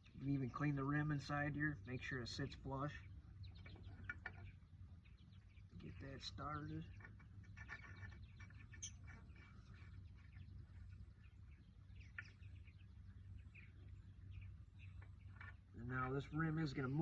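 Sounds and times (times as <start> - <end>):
faint bird chirps: 0.0 - 17.0
low steady hum: 0.0 - 17.0.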